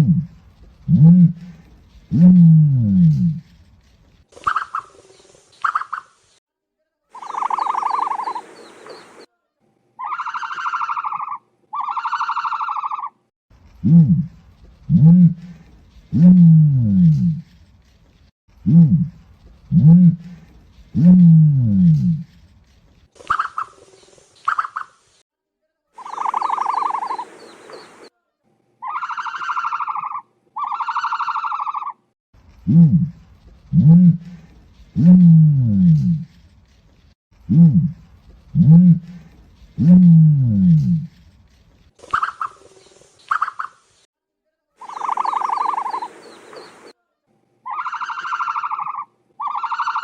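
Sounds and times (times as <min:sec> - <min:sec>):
ostrich buzzing calls: 0:07.2 - 0:09.3, 0:26.0 - 0:28.1, 0:44.8 - 0:46.9.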